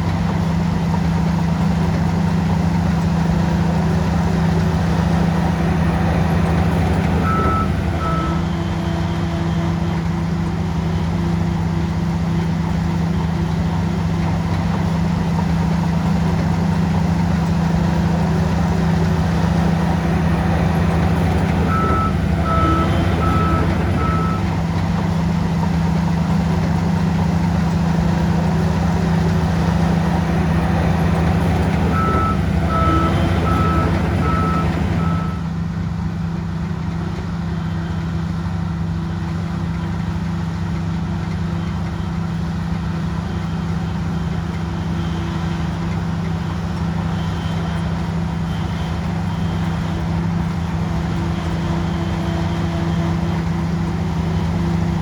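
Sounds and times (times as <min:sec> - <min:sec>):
bulldozer diesel engine running: 0:00.0 - 0:55.0
reversing alarm beeping: 0:04.9 - 0:11.2, 0:18.7 - 0:25.4, 0:29.2 - 0:35.7.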